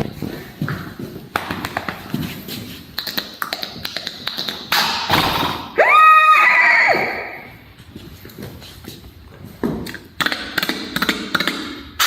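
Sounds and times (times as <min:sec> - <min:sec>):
beatboxing clicks and taps: 0:02.9 - 0:05.4, 0:09.8 - 0:12.0.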